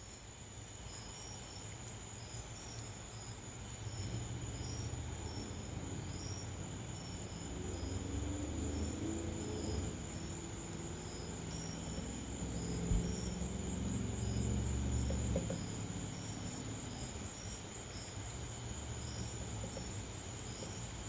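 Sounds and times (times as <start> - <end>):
wind chimes tinkling: 0.0 - 6.3, 9.5 - 16.4
insect drone: 0.0 - 21.0.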